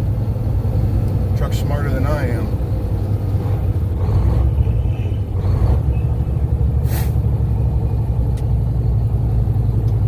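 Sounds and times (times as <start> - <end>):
truck engine rumble: 0.0 - 10.0
short sharp air hiss: 6.8 - 7.2.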